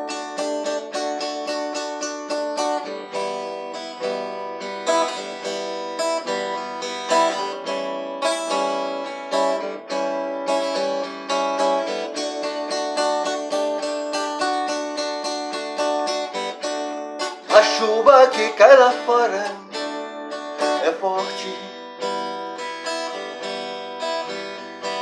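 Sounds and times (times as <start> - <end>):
guitar picking ringing notes: 0.0 - 25.0.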